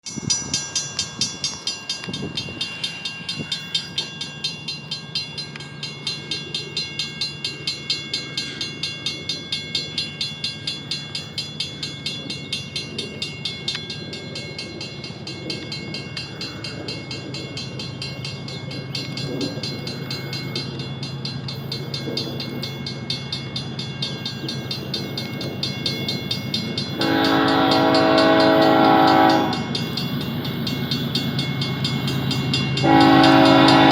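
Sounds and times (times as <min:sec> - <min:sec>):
diesel locomotives droning: 0:00.1 - 0:33.9
locomotive air horn: 0:27.0 - 0:29.7, 0:32.8 - 0:33.9.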